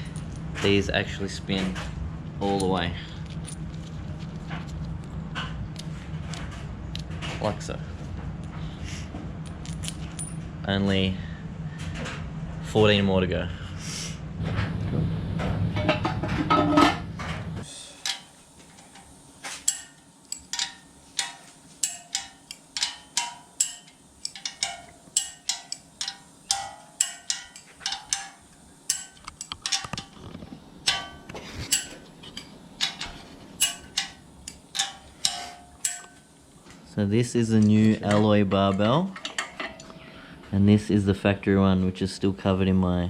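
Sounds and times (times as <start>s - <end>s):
loud low hum: 0.0s - 19.0s
steel engine parts clinking: 9.4s - 10.5s, 17.6s - 40.1s.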